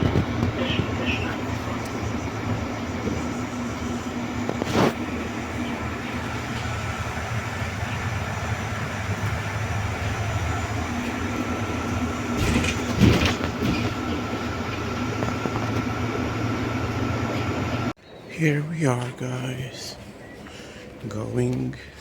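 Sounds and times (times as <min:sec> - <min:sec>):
knocks and rattles: 0:00.0 - 0:05.0, 0:09.1 - 0:16.0
bus engine drone: 0:00.0 - 0:22.0
faint steady whine: 0:00.0 - 0:22.0.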